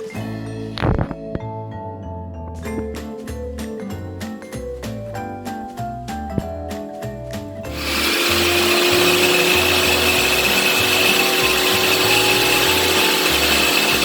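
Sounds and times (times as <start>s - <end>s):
background music with mallet notes: 0.0s - 14.0s
electric power tool running: 7.7s - 14.0s.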